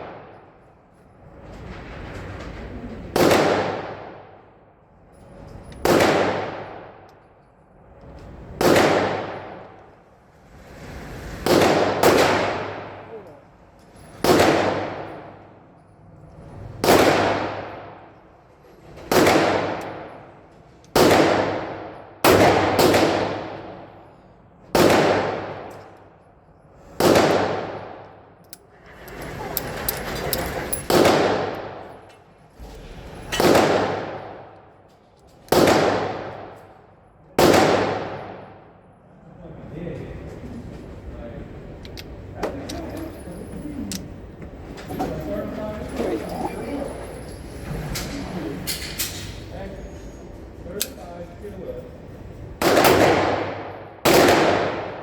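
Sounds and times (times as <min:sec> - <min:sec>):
loud gunshots: 0:03.1 - 0:04.1, 0:08.6 - 0:09.6, 0:11.4 - 0:13.0, 0:14.2 - 0:15.1, 0:16.8 - 0:17.9, 0:19.1 - 0:19.8, 0:21.0 - 0:23.6, 0:24.8 - 0:25.6, 0:27.0 - 0:27.9, 0:30.9 - 0:31.8, 0:33.4 - 0:34.4, 0:35.5 - 0:36.5, 0:37.4 - 0:38.2, 0:52.6 - 0:55.0.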